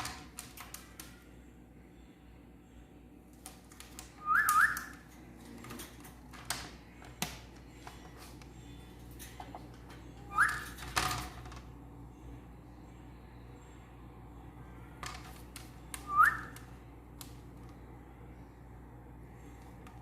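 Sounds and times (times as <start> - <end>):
parrot whistling: 4.2 - 5.0, 10.2 - 10.8, 16.0 - 16.6.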